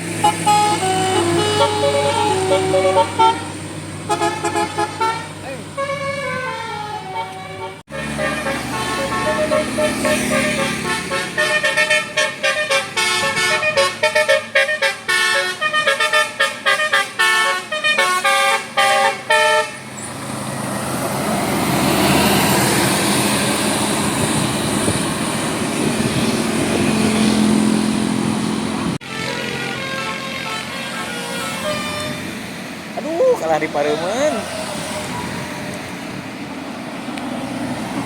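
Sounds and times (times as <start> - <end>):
bus engine: 0.0 - 38.0
road noise: 0.0 - 38.0
bus horn playing tune: 0.1 - 19.9, 28.9 - 32.4.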